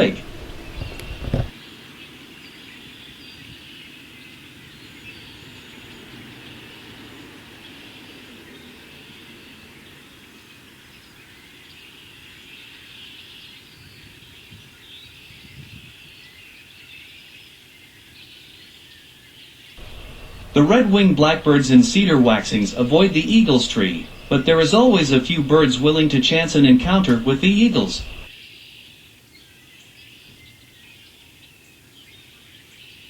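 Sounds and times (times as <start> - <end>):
flock of birds chattering: 0.0 - 1.5, 19.8 - 28.3
low background rumble: 0.0 - 1.5, 19.8 - 28.3.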